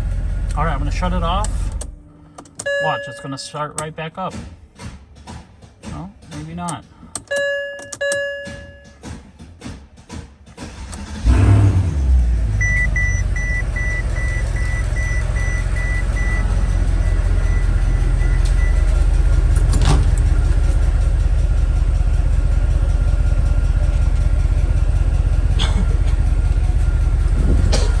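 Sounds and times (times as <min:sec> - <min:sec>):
car engine cranking and idling: 0:00.0 - 0:28.0
dashboard warning chime beeping: 0:02.6 - 0:04.1, 0:07.3 - 0:09.1, 0:12.6 - 0:19.1.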